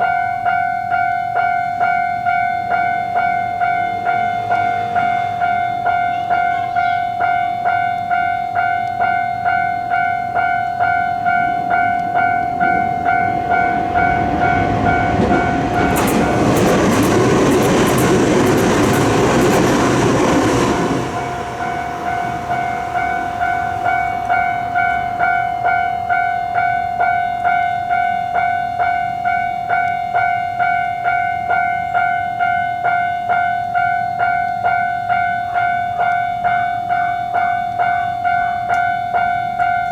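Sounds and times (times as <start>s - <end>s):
level-crossing bell ringing: 0.0s - 39.9s
train wheels clacking: 1.9s - 28.5s.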